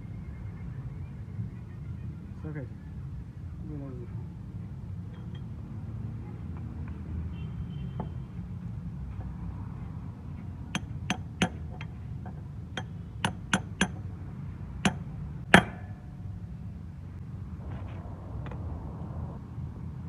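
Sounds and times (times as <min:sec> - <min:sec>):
hammer tapping on metal: 0:10.7 - 0:14.1, 0:14.8 - 0:16.0
steady low rumble: 0:14.0 - 0:20.0.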